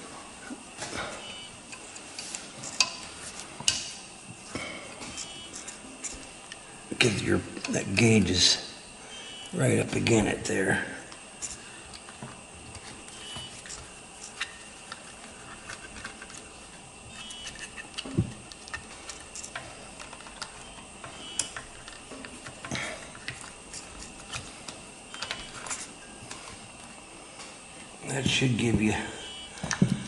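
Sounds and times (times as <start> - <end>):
tools and plastic parts clicking: 17.1 - 26.5.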